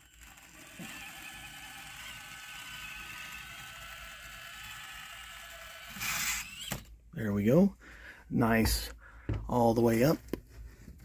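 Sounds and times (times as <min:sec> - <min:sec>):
small electric motor whirring: 0:00.0 - 0:06.9.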